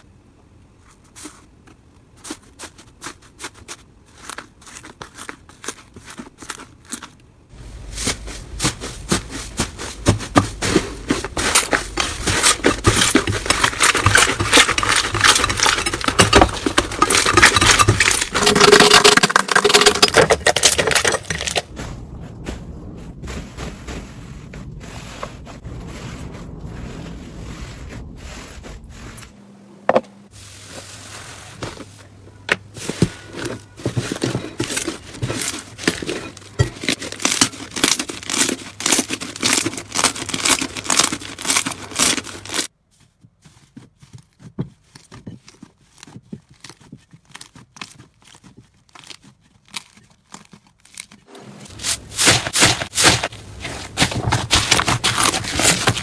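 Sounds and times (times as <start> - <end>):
slime crackling and popping: 53.9 - 56.0.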